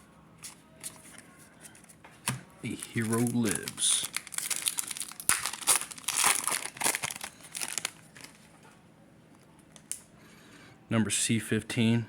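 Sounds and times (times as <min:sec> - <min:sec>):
card pack wrappers crinkling: 0:02.6 - 0:08.5.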